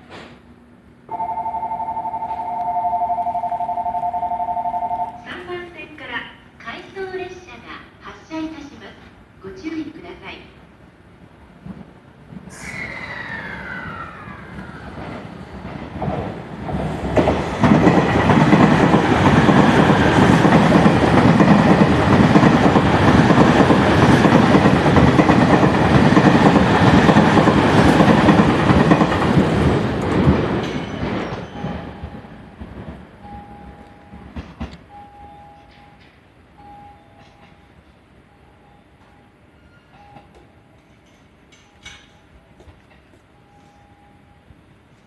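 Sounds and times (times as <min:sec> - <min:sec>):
train passing rumble: 0:10.4 - 0:36.6.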